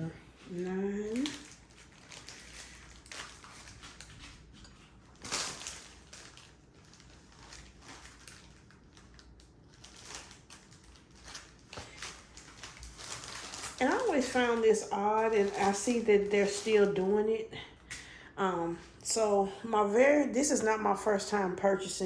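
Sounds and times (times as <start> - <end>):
loud plastic crackle: 0.5 - 17.0
plastic bags crinkling: 0.5 - 18.0.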